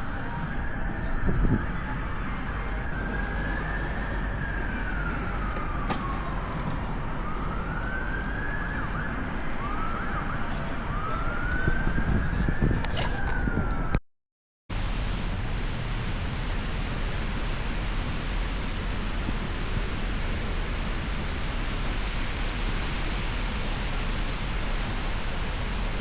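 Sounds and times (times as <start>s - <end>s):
emergency siren wailing: 14.7s - 26.0s
steady rumbling background: 14.7s - 26.0s
steady rushing noise: 14.7s - 26.0s.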